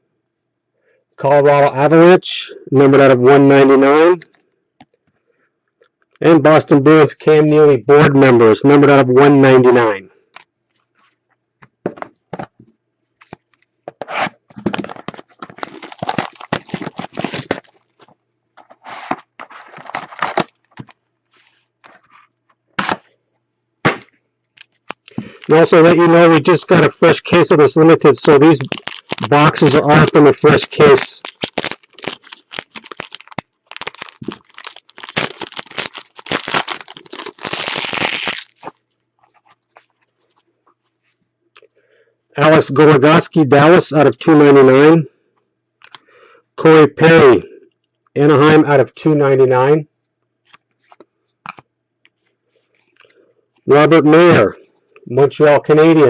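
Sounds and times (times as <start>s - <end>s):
wrapper tearing and crinkling: 14.1s - 21.0s, 24.6s - 25.8s, 28.1s - 40.0s.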